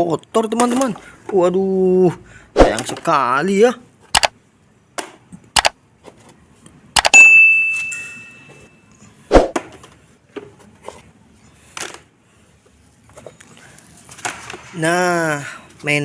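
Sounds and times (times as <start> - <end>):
plastic toys knocking: 0.6 - 1.0
ringing ding: 7.1 - 8.9.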